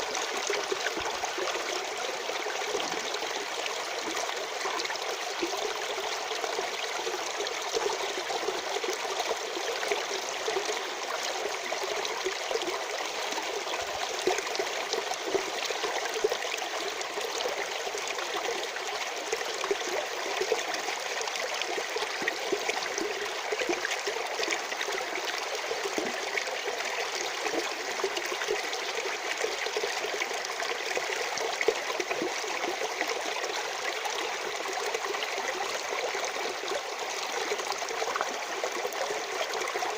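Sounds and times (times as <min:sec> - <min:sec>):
stream trickling: 0:00.0 - 0:39.9.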